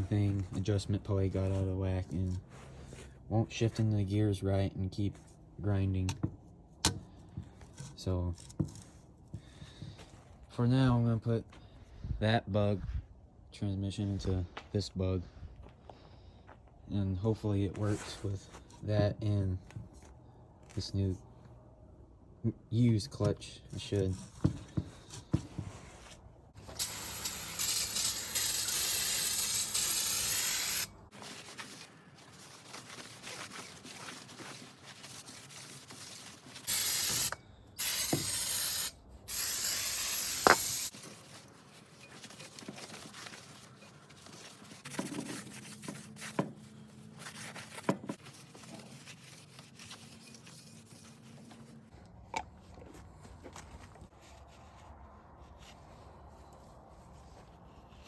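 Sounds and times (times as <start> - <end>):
pressurised spray hissing: 26.6 - 30.9, 36.6 - 40.9.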